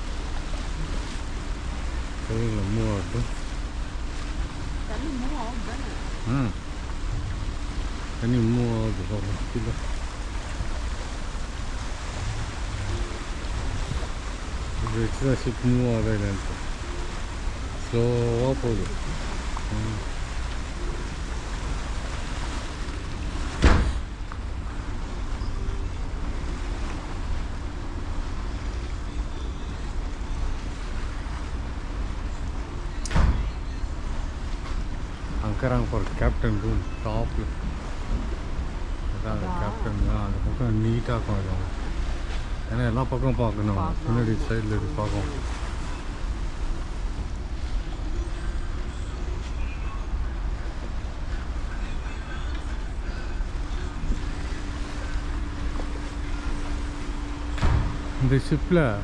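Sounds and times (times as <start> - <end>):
low rumble: 0.0 - 32.7
water rushing along ship hull: 0.0 - 59.0
wind on microphone: 9.3 - 17.9
brief thump: 23.6 - 24.0.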